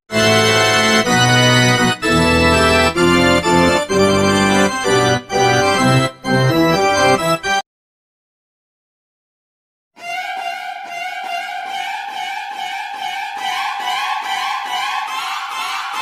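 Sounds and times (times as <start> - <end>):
organ-like keyboard chords: 0.1 - 7.6.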